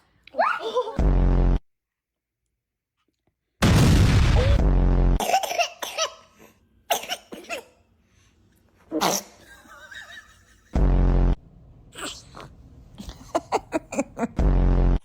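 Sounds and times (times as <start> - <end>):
loud deep steady burst: 3.6 - 5.2, 10.8 - 11.4
baby coughing: 5.2 - 7.9, 8.9 - 9.4, 13.0 - 14.1.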